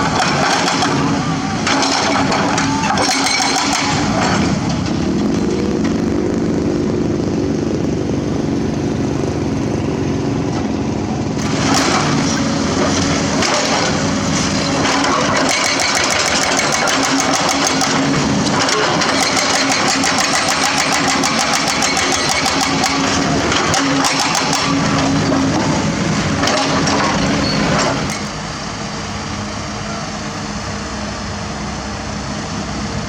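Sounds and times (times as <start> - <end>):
heavy machinery diesel engine: 0.0 - 33.0
rapid even clatter: 1.6 - 7.1, 11.4 - 25.7.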